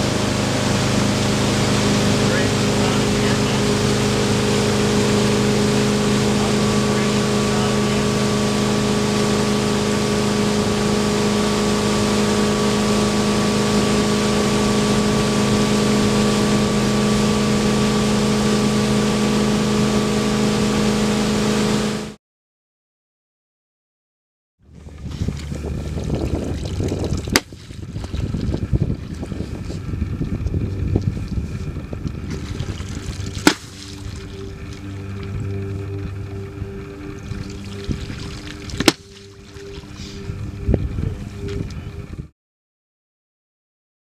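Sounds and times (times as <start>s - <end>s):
water rushing: 0.0s - 19.6s, 32.2s - 40.3s
motorboat engine running: 0.0s - 22.2s, 24.6s - 42.3s.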